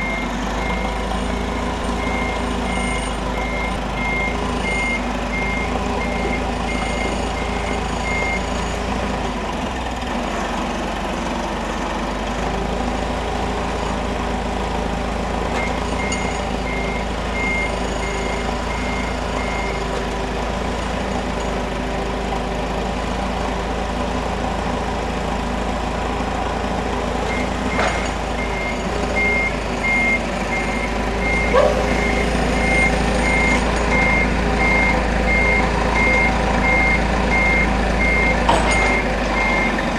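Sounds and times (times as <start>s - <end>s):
reversing alarm beeping: 0.0s - 8.9s, 15.6s - 19.9s, 27.3s - 39.9s
forklift engine running: 0.0s - 39.9s.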